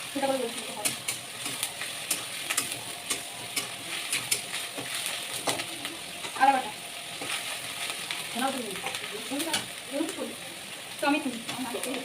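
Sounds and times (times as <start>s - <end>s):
food sizzling in a pan: 0.0s - 12.0s
spatula scraping a pan: 7.1s - 8.1s.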